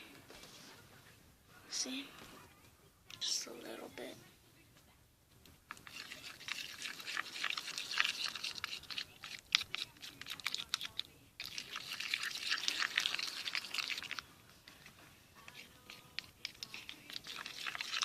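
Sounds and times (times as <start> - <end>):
slime squelching and clicking: 5.7 - 14.3, 15.5 - 18.0.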